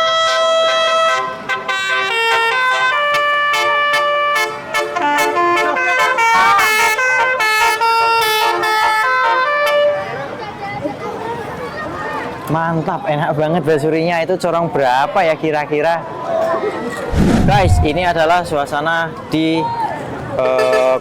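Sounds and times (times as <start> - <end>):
vehicle air horn playing melody: 1.1 - 9.5.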